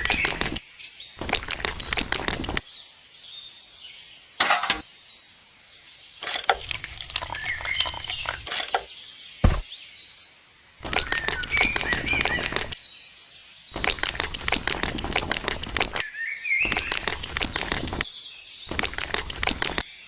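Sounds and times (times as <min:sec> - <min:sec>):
birds chirping: 0:00.0 - 0:20.0
sharp knock: 0:09.4 - 0:09.7.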